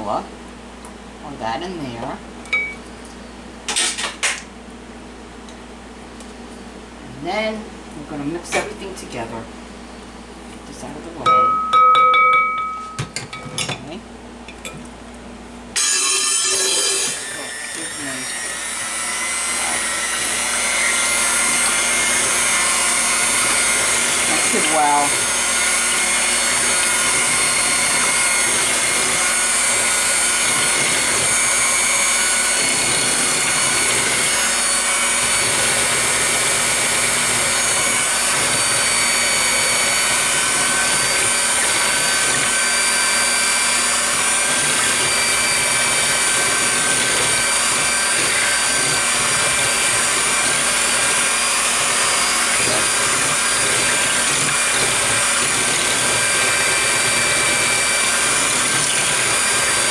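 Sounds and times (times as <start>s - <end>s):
electric mixer motor running: 15.8s - 59.9s.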